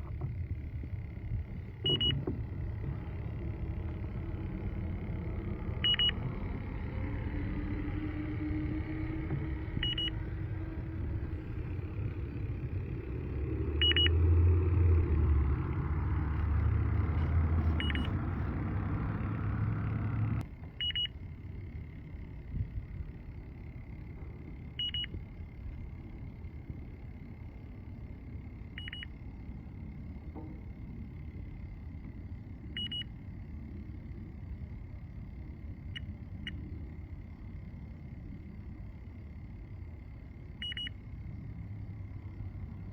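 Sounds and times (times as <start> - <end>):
low rumble and noise: 0.0 - 42.9
faint steady high tone: 1.5 - 15.0, 17.6 - 18.5, 20.7 - 21.6, 24.2 - 25.4, 28.5 - 29.4, 32.5 - 34.7, 35.6 - 41.4
leak detector high double beeps: 1.8 - 2.3, 5.8 - 6.3, 9.7 - 10.2, 13.8 - 14.2, 17.7 - 18.2, 20.8 - 21.2, 24.8 - 25.2, 28.7 - 29.2, 32.7 - 33.2, 35.9 - 36.7, 40.6 - 41.0.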